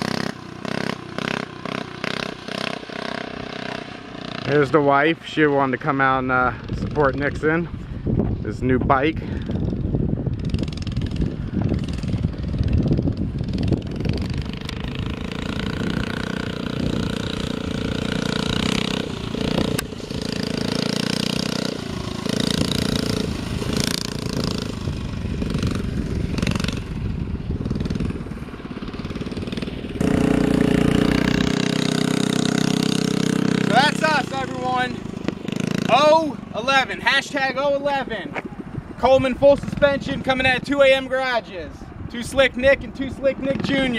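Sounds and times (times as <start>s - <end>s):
mini bike engine running: 0.0s - 4.6s, 9.3s - 36.7s.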